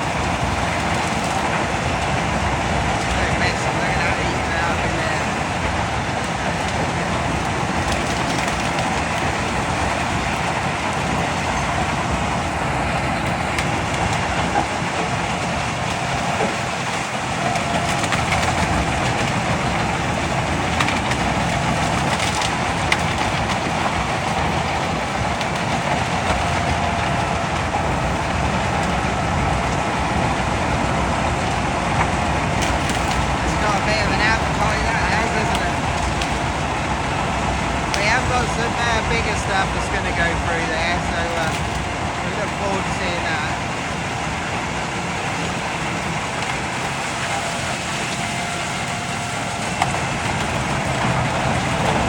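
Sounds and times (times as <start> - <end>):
wood chipper engine: 0.0 - 52.0
branches crunching and splintering: 4.9 - 39.1
sharp wood cracks: 13.3 - 30.6, 31.2 - 33.6.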